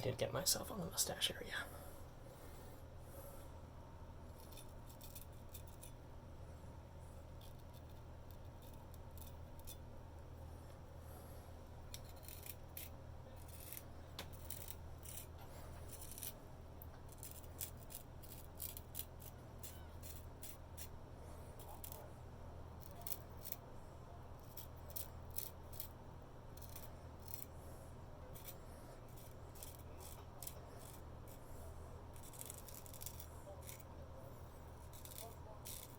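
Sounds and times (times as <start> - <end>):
faint low hum: 0.0 - 35.9
razor scraping stubble: 4.3 - 6.0, 7.4 - 9.9, 11.2 - 16.4, 17.0 - 22.1, 22.8 - 23.7, 24.4 - 35.9.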